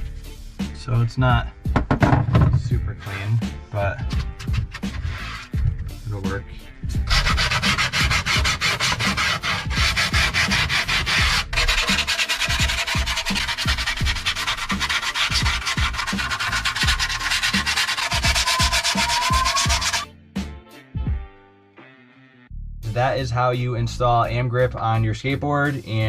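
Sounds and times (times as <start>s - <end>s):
rubbing on grip tape: 4.0s - 5.7s, 7.0s - 20.0s.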